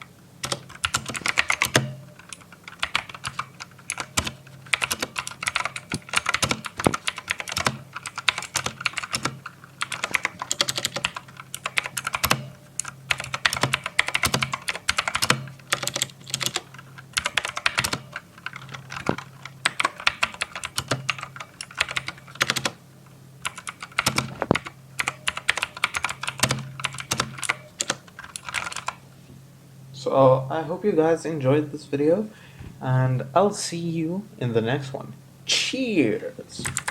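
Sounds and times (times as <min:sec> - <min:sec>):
mechanical keyboard typing: 0:00.0 - 0:22.8, 0:23.4 - 0:29.0, 0:36.6 - 0:36.9.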